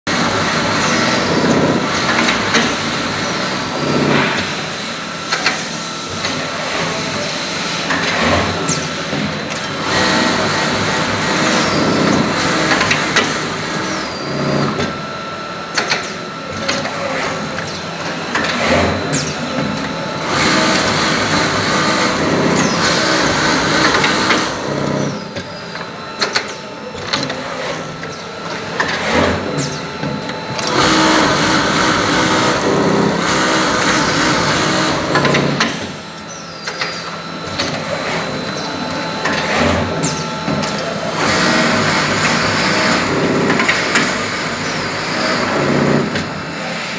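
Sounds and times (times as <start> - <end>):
sewing machine stitching: 20.2 - 25.2, 30.6 - 35.8, 41.1 - 46.3.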